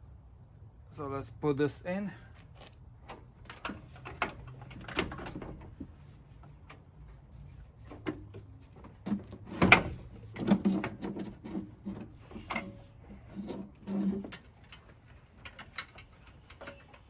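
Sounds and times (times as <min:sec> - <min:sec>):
metal parts knocking and clunking: 0:07.9 - 0:17.0.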